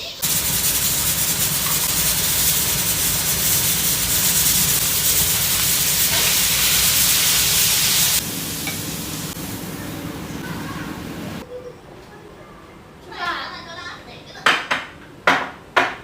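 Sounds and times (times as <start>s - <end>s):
electric fan blowing: 0.2s - 11.4s.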